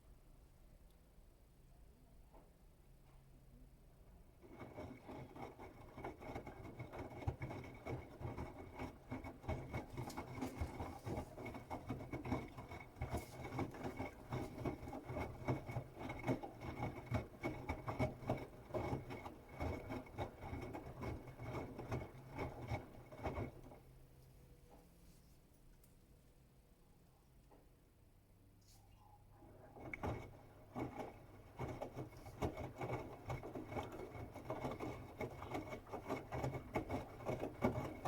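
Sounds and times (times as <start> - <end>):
washing machine motor whine: 4.4 - 23.8, 29.4 - 38.0
wet laundry tumbling and sloshing: 9.0 - 16.0.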